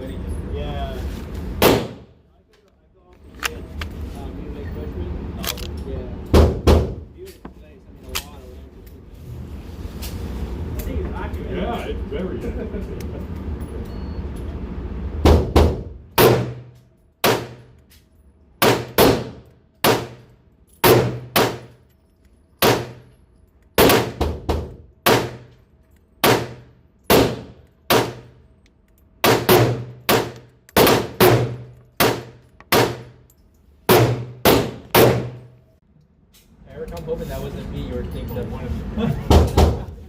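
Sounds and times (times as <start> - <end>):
pistol shots: 1.6 - 2.1, 16.2 - 17.6, 18.6 - 20.2, 20.8 - 21.7, 22.6 - 23.0, 23.8 - 24.2, 25.0 - 25.5, 26.2 - 28.2, 29.2 - 33.1, 33.9 - 35.5.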